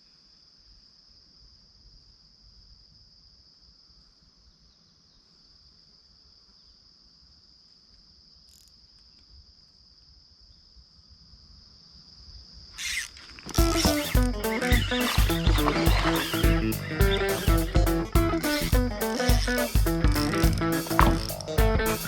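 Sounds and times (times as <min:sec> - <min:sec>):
crickets trilling: 0:00.0 - 0:21.8.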